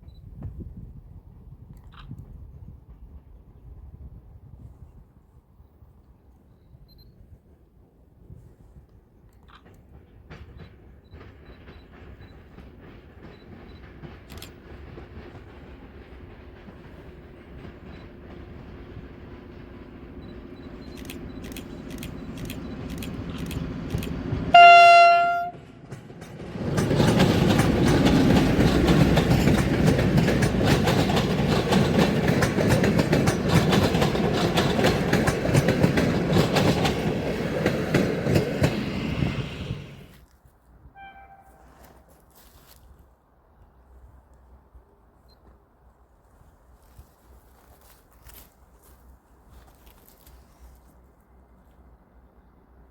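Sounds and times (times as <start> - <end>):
train rumbling: 0.0 - 6.0, 7.3 - 40.4
train horn blast: 24.5 - 25.7, 40.9 - 42.1
wheels clattering over rail joints: 25.1 - 40.1.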